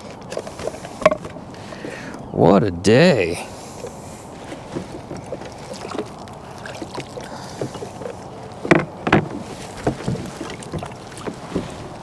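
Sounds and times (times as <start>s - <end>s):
knocks and taps on kayak hull: 8.6s - 12.0s.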